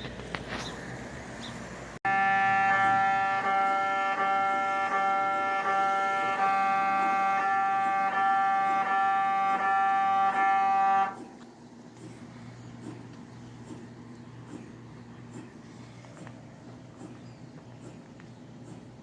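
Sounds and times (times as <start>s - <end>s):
mri scanner buzzing: 2.0s - 11.4s.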